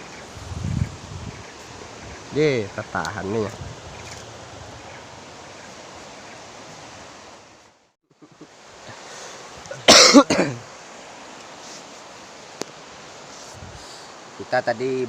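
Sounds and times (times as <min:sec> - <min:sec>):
river water rushing: 0:00.0 - 0:15.0
person coughing: 0:09.8 - 0:10.6.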